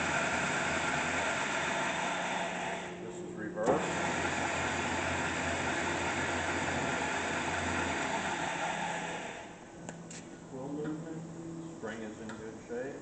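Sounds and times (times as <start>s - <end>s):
drill press motor whirring: 0.0s - 9.7s.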